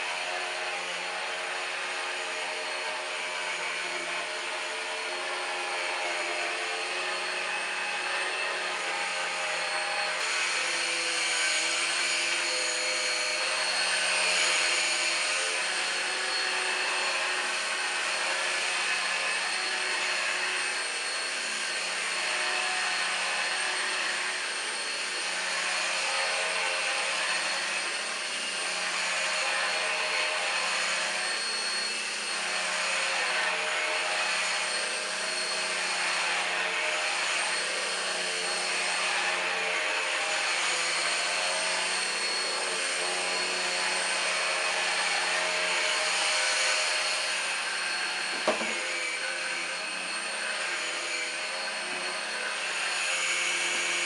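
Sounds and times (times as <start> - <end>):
stick vacuum motor whine: 0.0 - 54.0.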